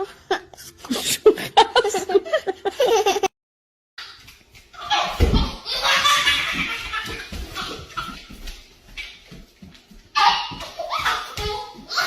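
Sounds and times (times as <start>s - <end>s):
person laughing hard: 0.0s - 3.3s.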